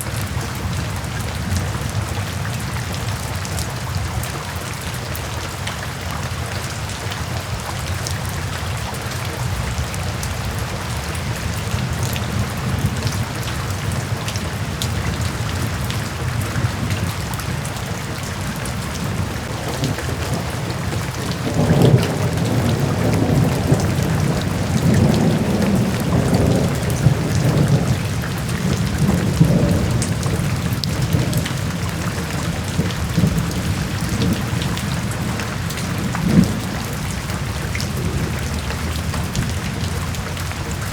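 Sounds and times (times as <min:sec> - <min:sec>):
heavy rain: 0:00.0 - 0:40.9
thunder rumbling: 0:09.4 - 0:40.9.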